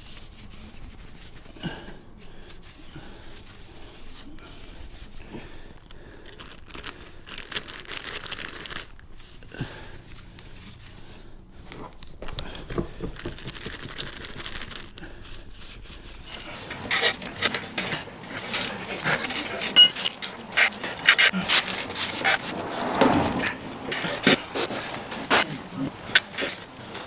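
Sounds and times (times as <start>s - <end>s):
tyre bead scraping on metal rim: 16.3s - 27.0s.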